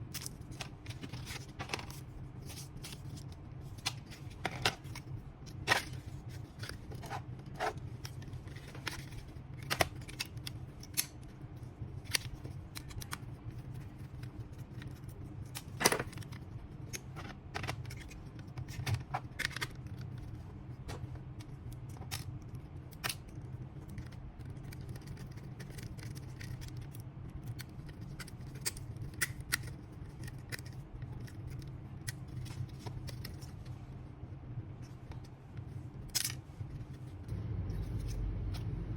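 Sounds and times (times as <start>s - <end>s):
steady low hum: 0.0s - 38.9s
tools and laptop parts clicking: 14.0s - 20.2s, 20.9s - 33.6s.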